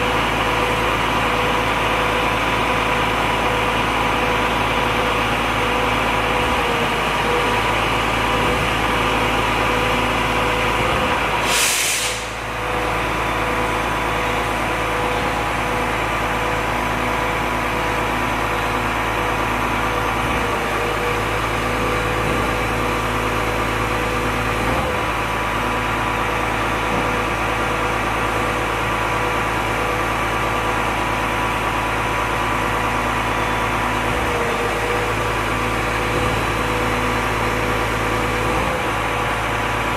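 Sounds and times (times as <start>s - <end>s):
truck diesel engine idling: 0.0s - 39.9s
short hiss of air: 11.4s - 12.4s.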